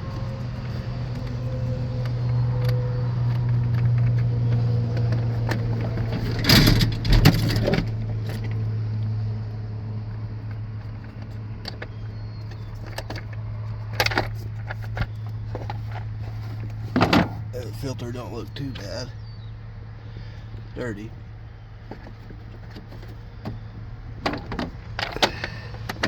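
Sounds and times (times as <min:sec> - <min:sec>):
mower engine humming: 0:00.0 - 0:26.0.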